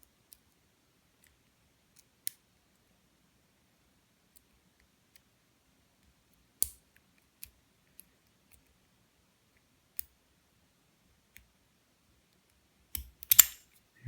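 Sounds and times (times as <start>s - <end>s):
lock-picking tools clicking: 13.0s - 13.6s.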